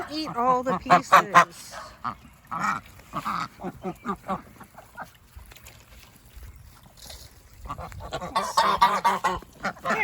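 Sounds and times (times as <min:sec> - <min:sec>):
geese honking: 0:00.0 - 0:05.2, 0:07.5 - 0:10.0
ducks quacking: 0:00.0 - 0:05.5, 0:07.0 - 0:10.0.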